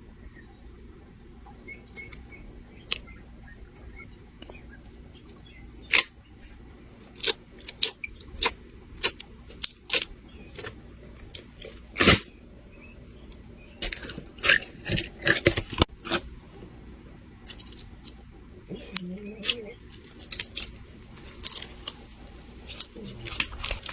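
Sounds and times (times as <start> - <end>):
crunchy slime being squeezed: 5.4 - 6.2, 7.0 - 12.4, 13.8 - 16.5, 19.4 - 23.9.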